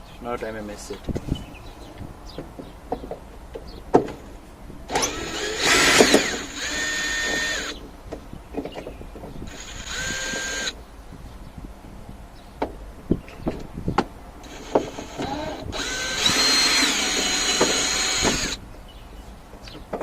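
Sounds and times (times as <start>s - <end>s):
cordless power drill running: 4.9s - 7.8s, 9.5s - 10.8s, 14.4s - 18.6s.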